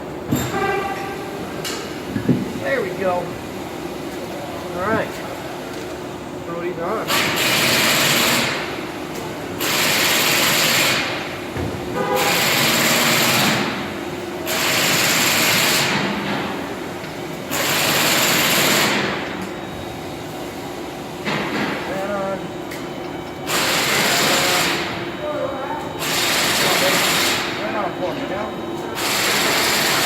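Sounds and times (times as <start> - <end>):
impact wrench running: 7.0 - 8.8, 9.6 - 11.4, 12.0 - 16.4, 17.4 - 19.5, 23.4 - 25.0, 26.0 - 27.7, 29.0 - 30.0.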